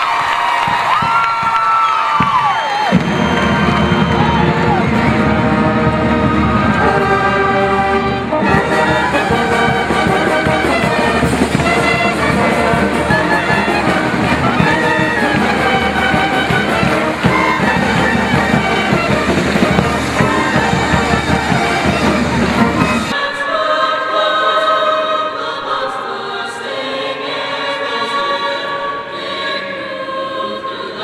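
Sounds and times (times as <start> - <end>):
brass music with held notes: 2.9 - 25.8.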